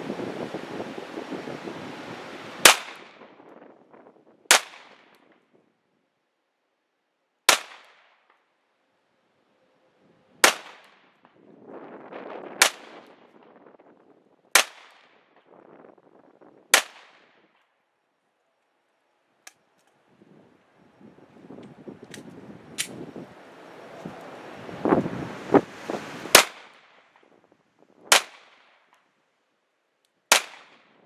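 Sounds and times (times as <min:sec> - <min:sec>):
pistol shots with echo: 0:30.3 - 0:30.9.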